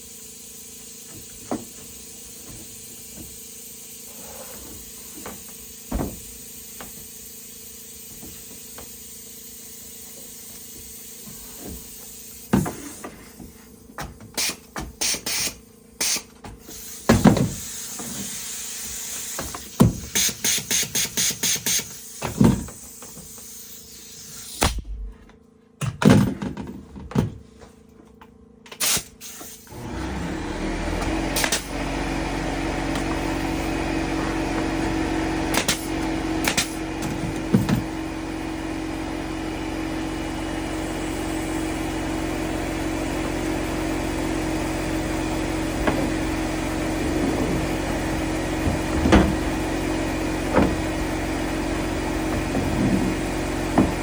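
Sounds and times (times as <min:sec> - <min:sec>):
engine running steadily: 0:30.0 - 0:54.0.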